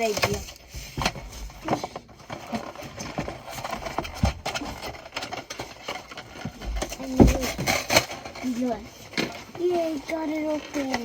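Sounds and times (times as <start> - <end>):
cardboard box being forced open: 0.0 - 8.4.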